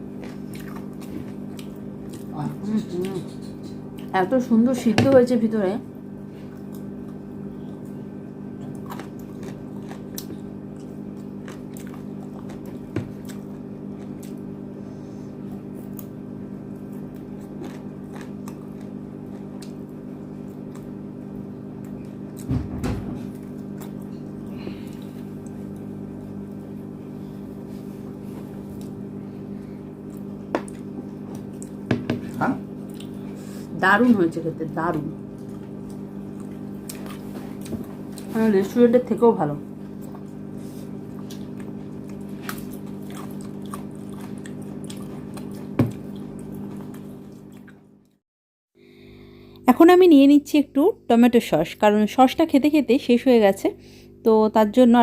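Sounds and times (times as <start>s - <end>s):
person chewing and biting food: 0.0s - 2.4s, 6.4s - 22.5s, 23.2s - 26.5s, 27.5s - 33.7s, 35.3s - 38.3s, 39.9s - 48.2s
steady low hum: 0.0s - 48.2s, 48.8s - 55.0s.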